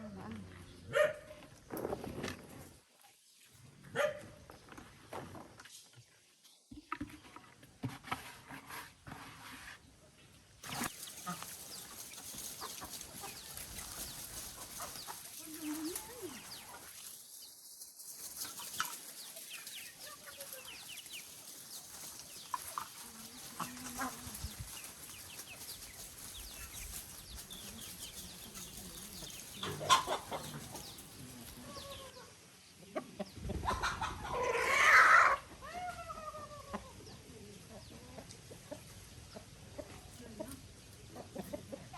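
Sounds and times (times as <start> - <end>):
chickens clucking: 10.6 - 41.9.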